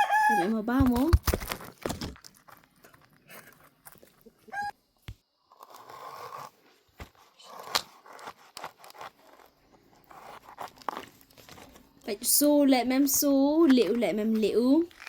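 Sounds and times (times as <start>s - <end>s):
crunching and scraping: 0.7s - 4.6s, 5.5s - 12.1s, 13.0s - 15.0s
chicken call: 4.5s - 4.7s.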